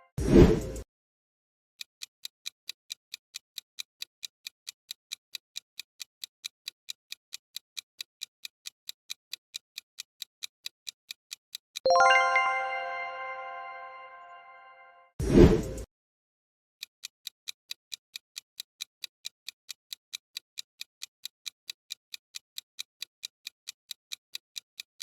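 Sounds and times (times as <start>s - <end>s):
timer ticking: 2.0s - 14.4s
bright chime: 11.9s - 15.1s.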